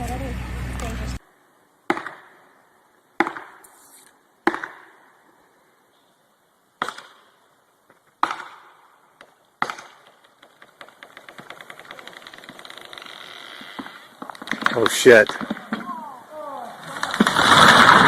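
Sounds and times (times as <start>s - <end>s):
chopping strikes on wood: 1.9s - 2.3s, 3.2s - 3.6s, 4.4s - 4.9s, 6.8s - 7.2s, 8.2s - 8.7s, 9.6s - 10.2s.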